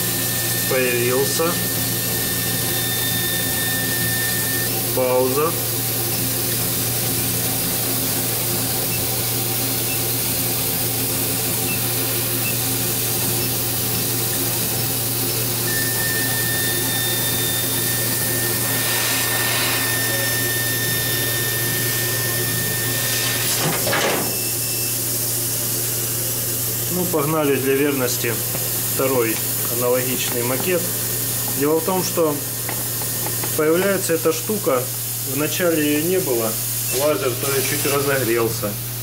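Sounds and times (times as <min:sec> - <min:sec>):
laser cutter fans humming: 0:00.0 - 0:39.0
high-pitched laser squeal: 0:15.7 - 0:23.6.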